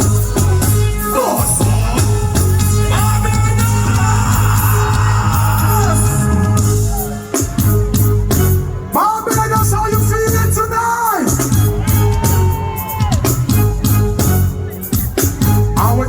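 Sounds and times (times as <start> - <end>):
person singing: 0.0 - 7.2
heavy pulsing bass line: 0.0 - 16.0
live reggae music: 0.0 - 16.0.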